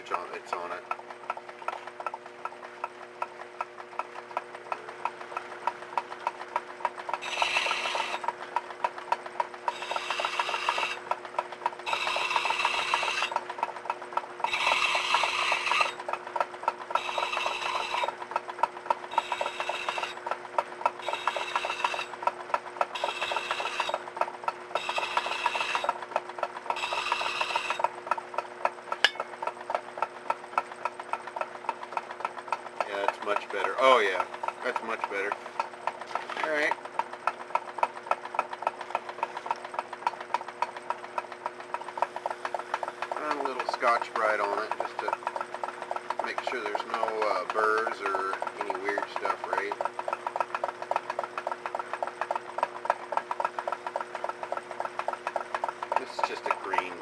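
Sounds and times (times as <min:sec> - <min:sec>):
lathe humming and ticking: 0:00.0 - 0:57.0
tool scraping spinning metal: 0:07.0 - 0:08.4, 0:09.6 - 0:13.7, 0:14.3 - 0:28.2, 0:28.8 - 0:29.8, 0:42.9 - 0:57.0.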